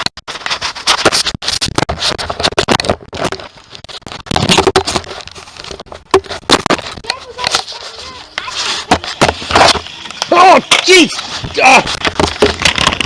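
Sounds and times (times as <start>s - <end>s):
handling clicks and rustling: 0.0s - 13.0s.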